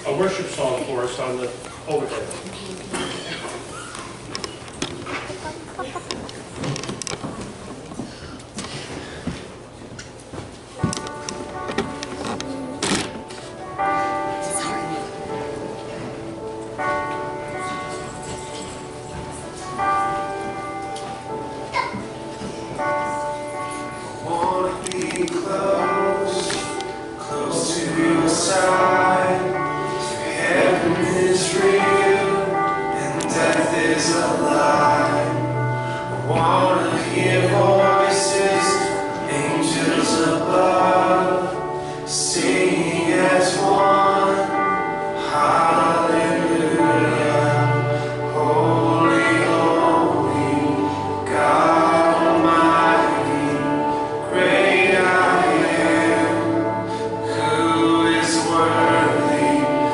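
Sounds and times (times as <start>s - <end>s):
musical accompaniment: 10.8s - 59.9s
group singing worship song: 24.2s - 59.9s.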